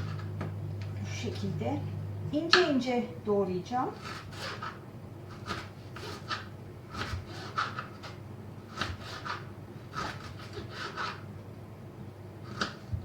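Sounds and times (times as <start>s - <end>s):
knife slicing on cutting board: 4.0s - 11.2s.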